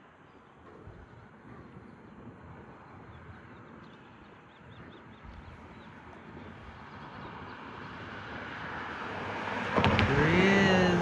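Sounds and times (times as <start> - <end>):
low outdoor rumble: 9.8 - 11.0.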